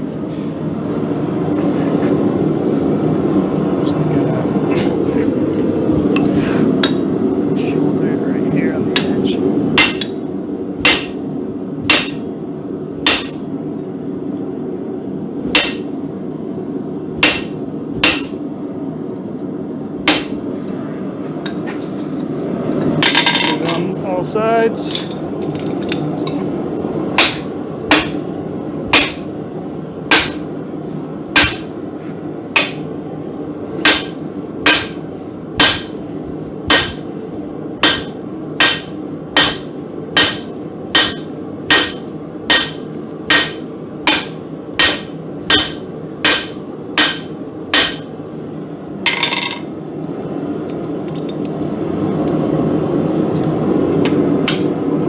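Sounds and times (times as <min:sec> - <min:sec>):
forge running: 0:00.7 - 0:13.7, 0:14.9 - 0:18.7, 0:19.7 - 0:21.6, 0:23.8 - 0:48.9
hammer striking steel on anvil: 0:09.8 - 0:10.2, 0:10.8 - 0:11.2, 0:11.8 - 0:12.3, 0:13.0 - 0:13.5, 0:15.5 - 0:16.0, 0:17.2 - 0:18.5, 0:20.1 - 0:20.5, 0:27.2 - 0:28.3, 0:28.9 - 0:29.3, 0:30.1 - 0:30.5, 0:31.4 - 0:31.8, 0:32.6 - 0:32.9, 0:33.8 - 0:36.0, 0:36.7 - 0:37.1, 0:37.8 - 0:48.2, 0:49.1 - 0:49.7.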